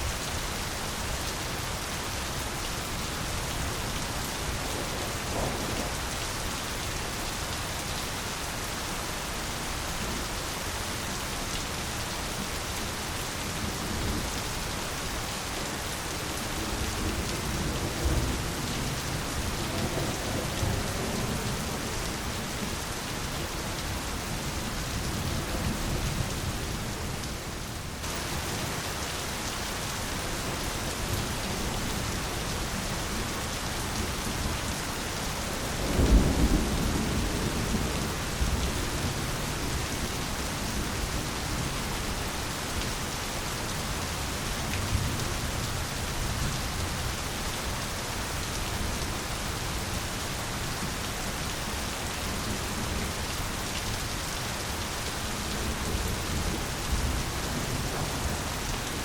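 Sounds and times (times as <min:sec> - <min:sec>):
steady rain falling: 0:00.0 - 0:59.0
thunder rumbling: 0:04.6 - 0:06.1.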